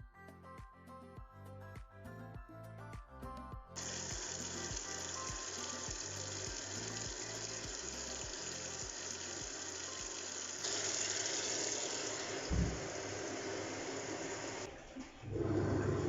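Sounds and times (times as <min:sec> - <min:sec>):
washing machine filling with water: 0:03.8 - 0:16.0
dull thump: 0:12.5 - 0:12.9.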